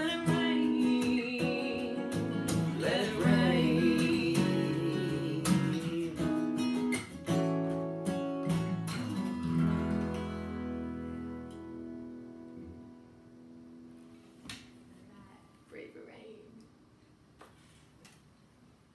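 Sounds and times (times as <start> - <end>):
acoustic guitar strumming: 0.0 - 14.2.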